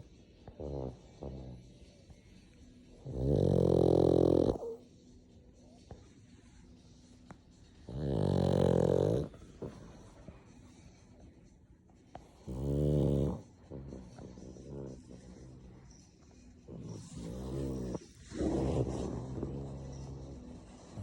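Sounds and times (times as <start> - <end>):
dog snoring: 0.0 - 2.2, 3.0 - 4.8, 7.8 - 10.4, 12.1 - 21.0.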